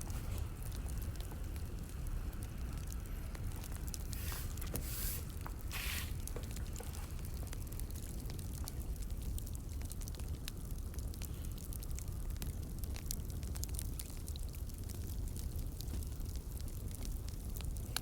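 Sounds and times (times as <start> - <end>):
low steady rumble: 0.0 - 18.0
wood fire crackling: 0.0 - 18.0
short hissing bursts: 4.1 - 6.3.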